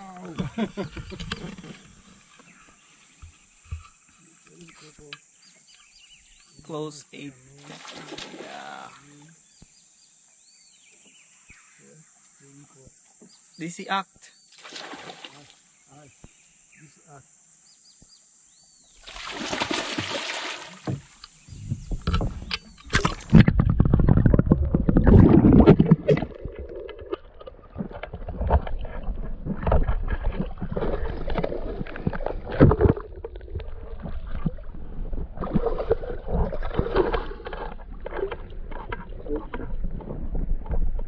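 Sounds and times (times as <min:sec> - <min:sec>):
water splashing around boat: 0:07.5 - 0:08.9, 0:14.5 - 0:15.7, 0:19.0 - 0:41.0.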